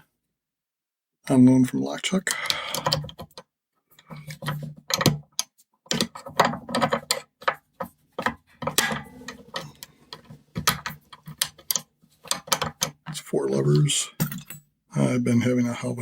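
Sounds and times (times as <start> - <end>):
padlock clicking and rattling: 2.4 - 3.4, 4.1 - 7.6, 8.2 - 13.2.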